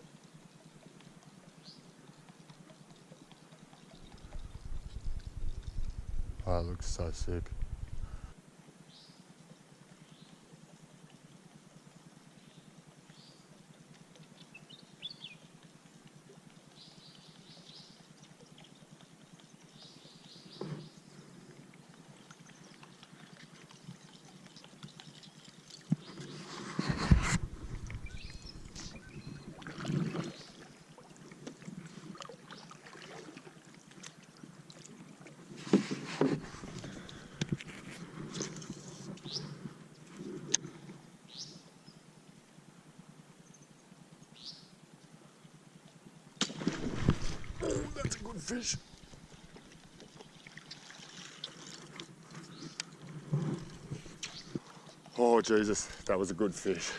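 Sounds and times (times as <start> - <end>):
quiet river ambience: 0.0 - 56.9
splashing and knocks around kayak: 25.8 - 30.6, 35.5 - 39.3, 46.4 - 54.9
faint bird chirps: 27.9 - 29.5.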